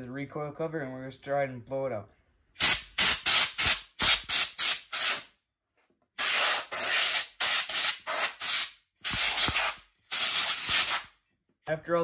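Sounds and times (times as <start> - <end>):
compressed air hissing blasts: 2.6 - 5.3, 6.2 - 11.1.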